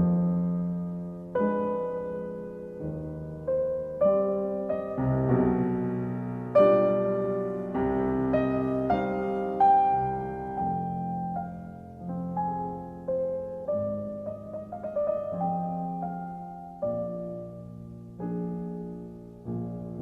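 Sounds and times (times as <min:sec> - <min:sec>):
slow solo piano music: 0:00.0 - 0:20.0.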